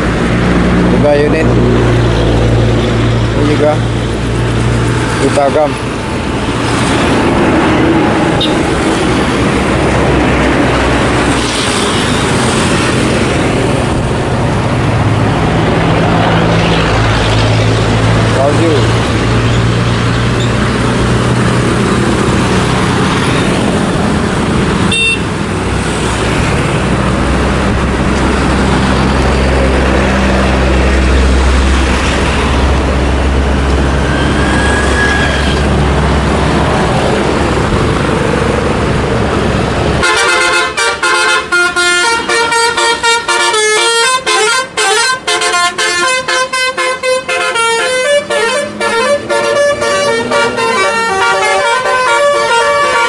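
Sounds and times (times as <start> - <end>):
bus engine humming: 0.0 - 53.0
musical horn melody: 40.0 - 53.0.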